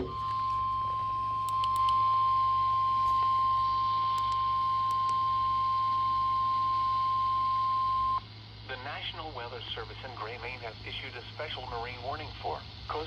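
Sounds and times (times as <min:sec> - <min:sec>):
long steady alarm beep: 0:00.0 - 0:08.3.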